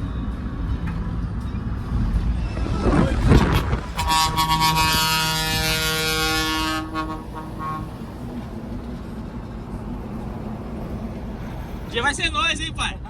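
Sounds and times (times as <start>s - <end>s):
road and engine noise: 0.0s - 13.0s
truck air horn chord: 3.5s - 8.1s.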